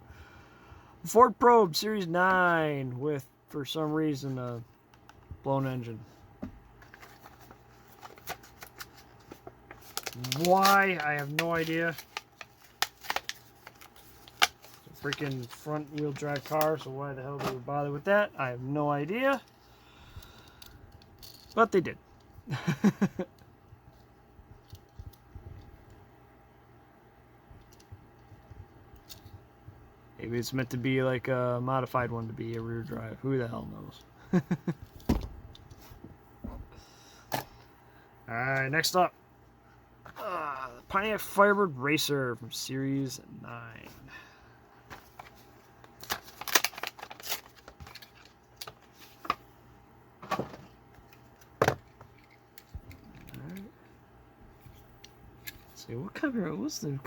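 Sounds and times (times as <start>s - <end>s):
faint steady hum: 0.0s - 57.0s
plastic packaging cracking open: 8.0s - 16.8s, 45.9s - 48.9s.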